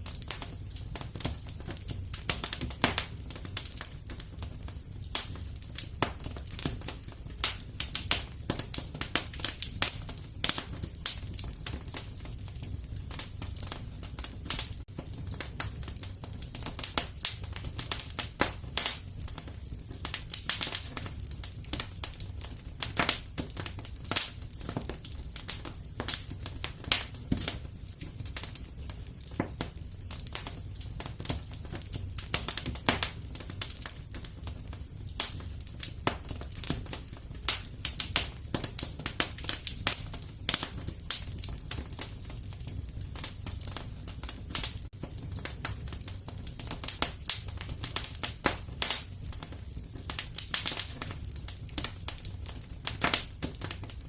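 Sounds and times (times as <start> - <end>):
fire crackling and popping: 0.0 - 54.0
low rumble of flames: 0.0 - 54.0.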